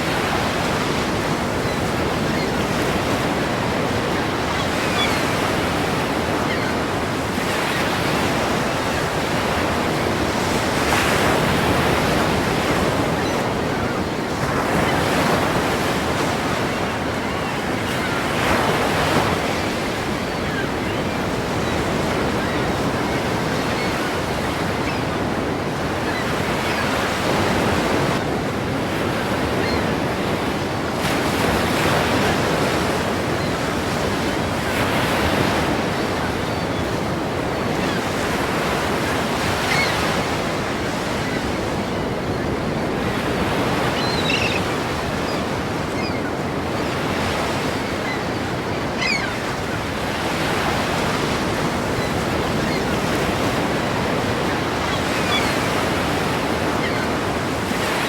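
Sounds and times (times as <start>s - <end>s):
ocean waves breaking: 0.0s - 58.0s.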